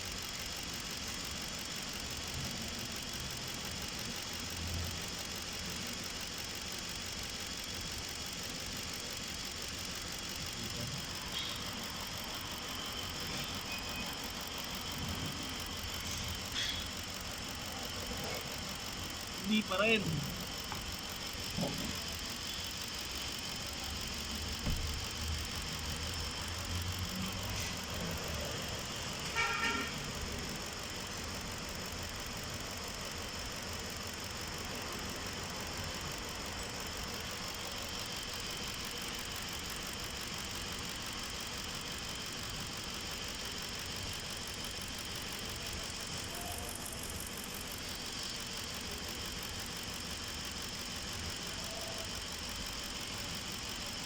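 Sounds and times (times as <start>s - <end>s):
car engine idling and misfiring: 0.0s - 54.0s.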